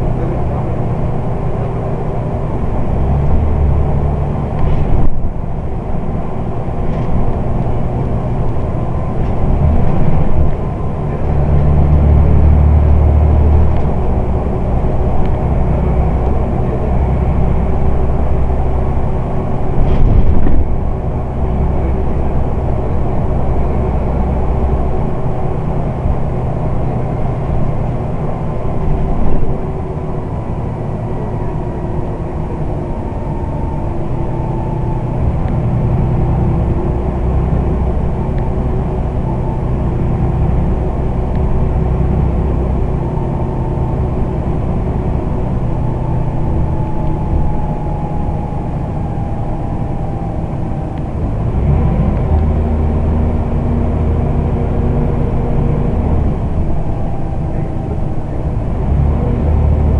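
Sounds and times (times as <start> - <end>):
bus engine running: 0.0 - 59.9
short loud bump: 19.8 - 20.8.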